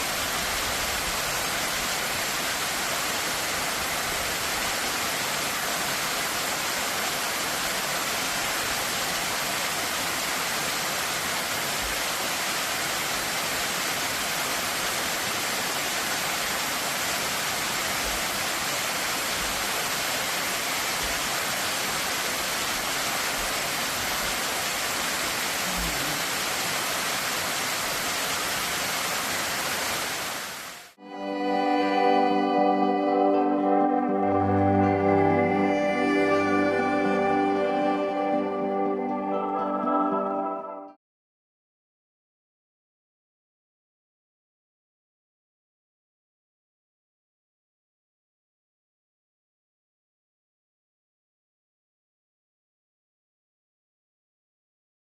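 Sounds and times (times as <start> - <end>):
waterfall rushing: 0.0 - 39.6.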